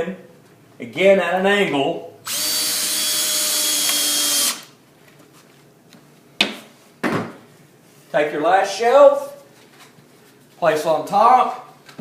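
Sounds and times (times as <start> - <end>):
power drill driving a screw: 2.2 - 4.7.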